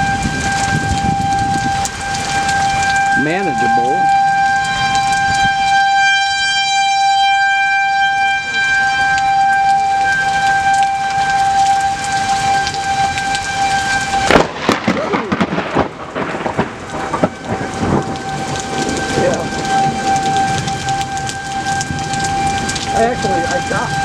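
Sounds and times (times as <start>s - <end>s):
heavy rain: 0.0s - 24.0s
thunderclap rumbling: 0.0s - 24.0s.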